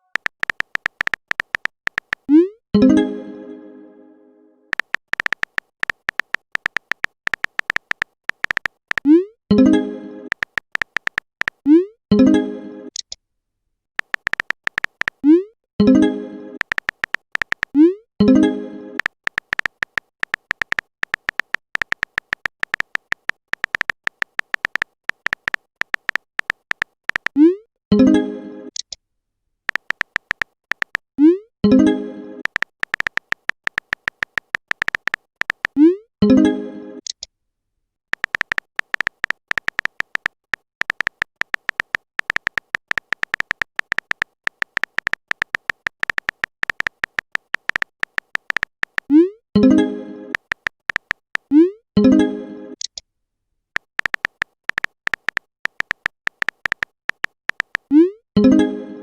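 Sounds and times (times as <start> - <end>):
keyboard typing clicks: 0.0 - 2.9, 4.7 - 11.8, 14.0 - 16.0, 16.6 - 18.4, 19.0 - 27.5, 29.7 - 31.3, 32.4 - 36.4, 38.1 - 52.1, 53.8 - 58.6.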